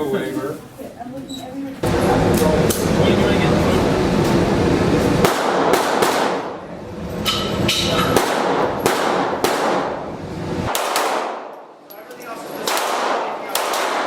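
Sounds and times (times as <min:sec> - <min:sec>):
gunshots echoing: 0:05.2 - 0:06.6, 0:08.1 - 0:11.8, 0:12.6 - 0:14.0.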